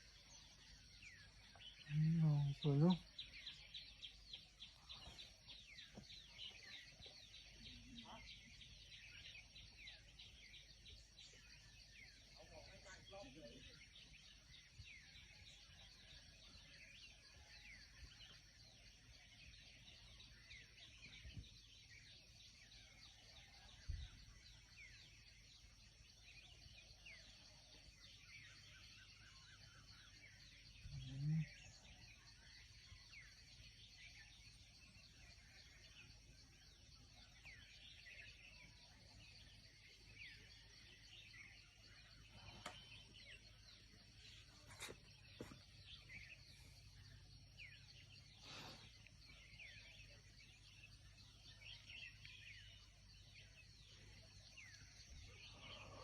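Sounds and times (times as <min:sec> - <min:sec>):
high insect hum: 0:00.0 - 0:56.0
small birds chirping: 0:00.0 - 0:56.0.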